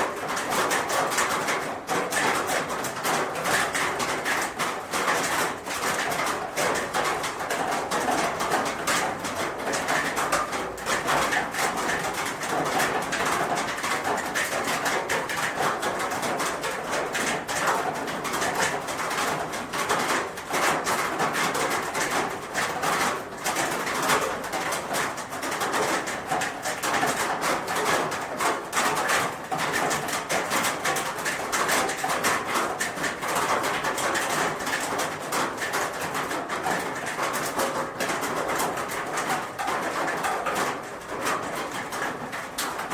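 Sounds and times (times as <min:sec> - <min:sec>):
rain falling on a roof: 0:00.0 - 0:42.9.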